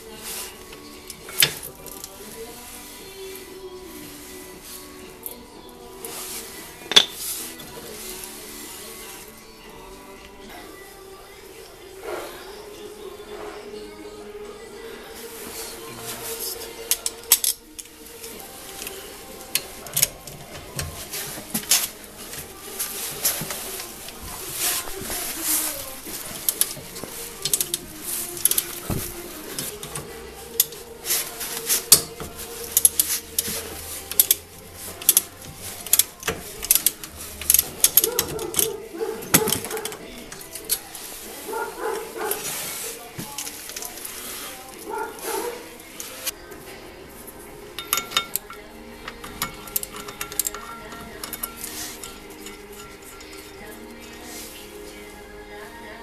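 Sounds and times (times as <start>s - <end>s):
quiet background music: 0.0s - 56.0s
metal tools clicking and clinking: 0.7s - 2.2s, 6.8s - 7.8s, 16.4s - 42.5s, 47.7s - 54.3s.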